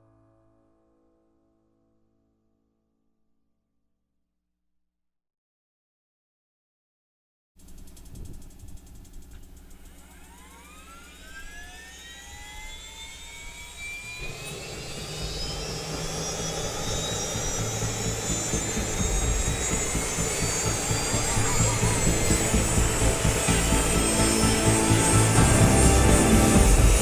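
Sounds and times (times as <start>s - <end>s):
helicopter turbine whine spooling up: 7.6s - 27.0s
low rumble: 12.7s - 27.0s.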